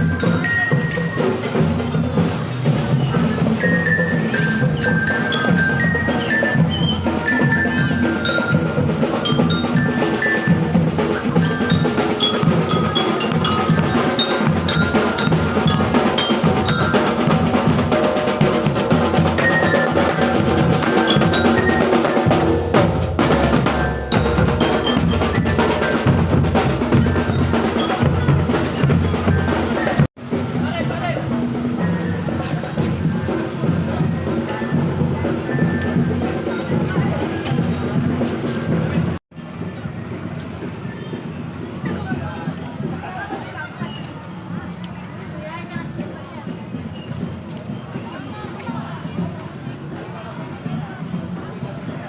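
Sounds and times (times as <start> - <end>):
bell lyre melody: 0.0 - 1.9, 3.2 - 17.9, 18.7 - 30.1, 31.6 - 39.0
marching drums: 0.0 - 52.0.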